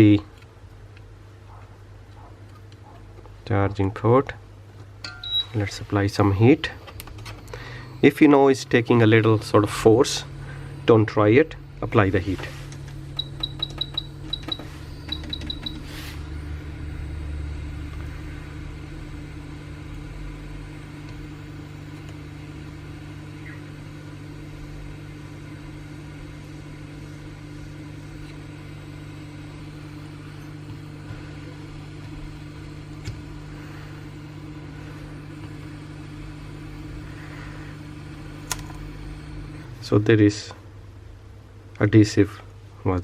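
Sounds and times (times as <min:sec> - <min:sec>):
short high beeps: 0:05.0 - 0:05.6
hot air gun humming: 0:06.2 - 0:40.1.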